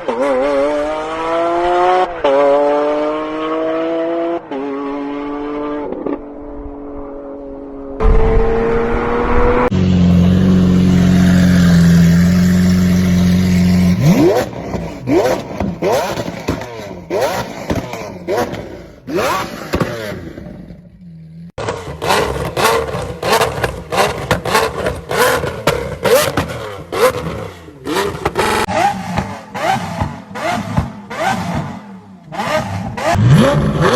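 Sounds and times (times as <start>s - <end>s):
exhaust popping and crackling: 8.0s - 33.9s
sports car engine revving: 8.0s - 33.9s.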